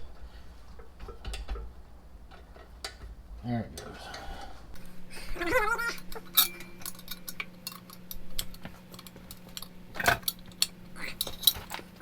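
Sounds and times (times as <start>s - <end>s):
metal hand tools clinking: 5.8s - 12.0s.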